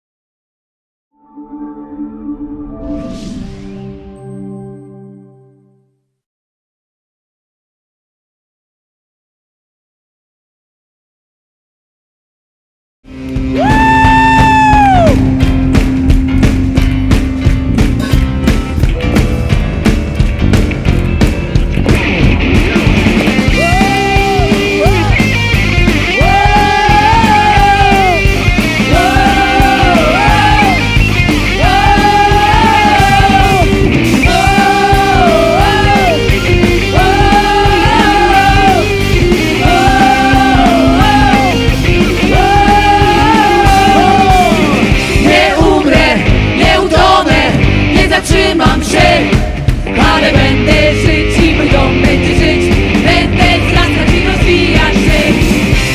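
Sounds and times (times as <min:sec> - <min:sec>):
gliding lead melody: 0:01.2 - 0:05.9
rock band playing: 0:13.1 - 0:55.9.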